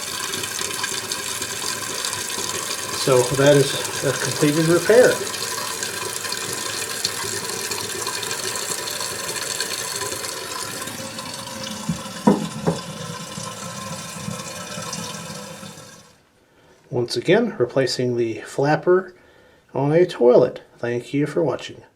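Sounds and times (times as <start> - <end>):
toilet tank refilling: 0.0 - 16.2
short knocks: 11.9 - 12.8.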